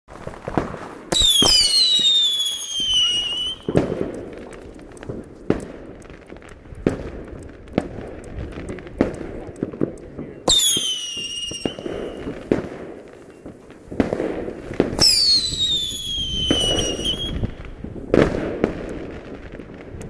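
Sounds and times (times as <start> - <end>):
fireworks bangs and booms: 0.1 - 20.0
whistling firework: 0.2 - 4.7, 10.2 - 20.0.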